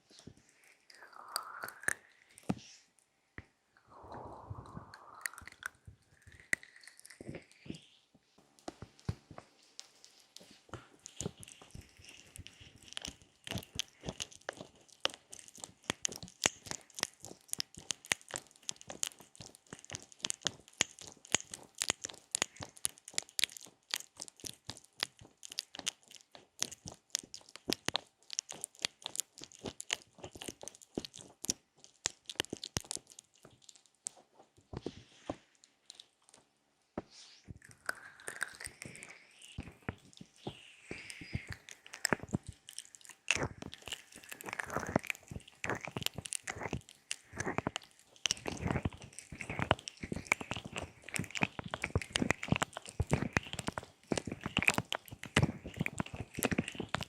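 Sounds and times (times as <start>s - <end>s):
fingers rubbing on microphone: 10.0s - 24.3s, 37.2s - 57.0s.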